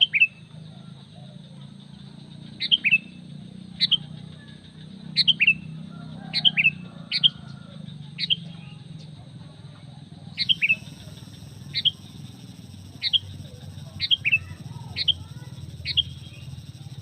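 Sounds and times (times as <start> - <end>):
steady low hum: 10.3 - 17.0
bird calling sharp notes: 10.4 - 17.0.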